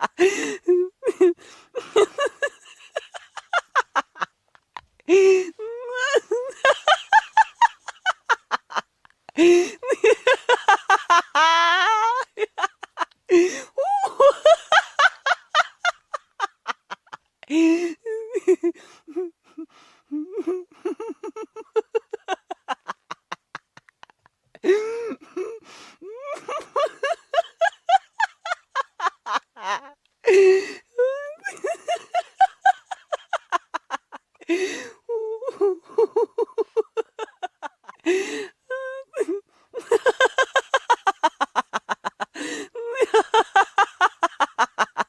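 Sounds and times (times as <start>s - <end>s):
person laughing: 0.0s - 4.3s, 5.0s - 45.0s
short breaths: 24.6s - 26.0s, 34.4s - 35.1s, 38.0s - 38.6s, 42.3s - 42.8s.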